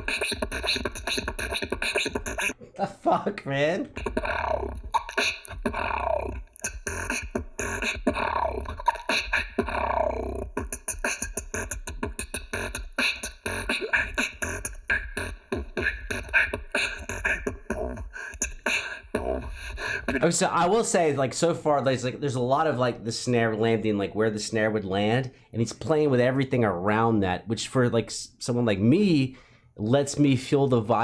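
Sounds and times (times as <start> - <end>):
person beatboxing: 0.0 - 2.6, 3.8 - 20.8.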